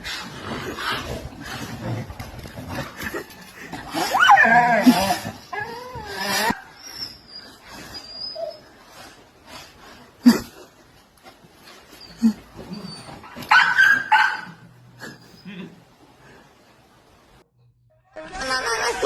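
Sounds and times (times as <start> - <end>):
dog whining: 3.6 - 9.2, 11.9 - 15.4
dog crying: 3.8 - 8.8, 12.0 - 14.7.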